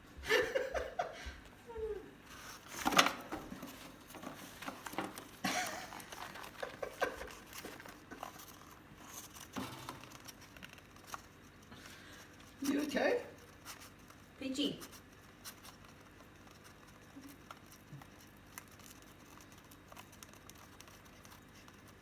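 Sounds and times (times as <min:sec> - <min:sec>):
cardboard rolls rustling and knocking: 0:02.6 - 0:08.4.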